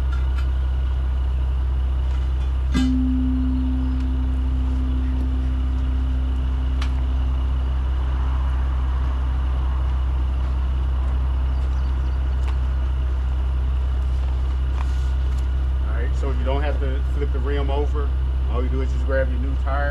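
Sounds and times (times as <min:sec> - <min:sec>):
truck engine idling: 0:00.0 - 0:19.9
metallic ring: 0:02.4 - 0:07.5.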